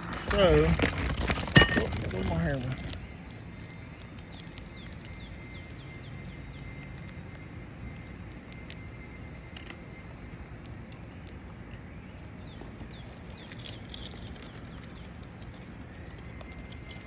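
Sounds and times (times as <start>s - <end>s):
bird chirps: 3.4s - 17.0s.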